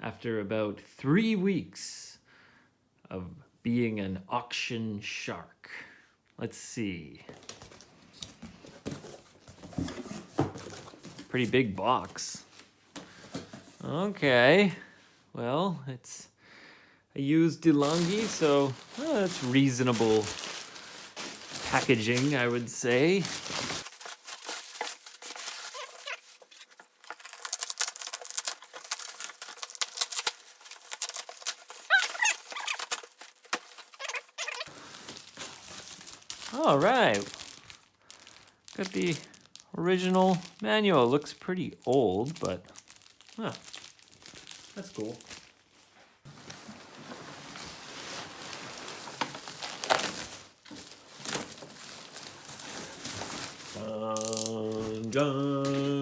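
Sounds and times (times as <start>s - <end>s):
packaging crinkling and rustling: 7.3s - 14.0s, 17.6s - 56.0s
high squeak: 25.5s - 26.4s, 31.7s - 33.1s
man singing a held note: 53.8s - 56.0s.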